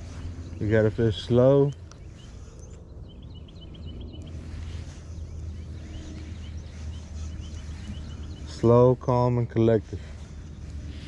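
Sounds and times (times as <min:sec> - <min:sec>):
bird chirping: 0:00.0 - 0:11.0
low steady hum: 0:00.0 - 0:11.0.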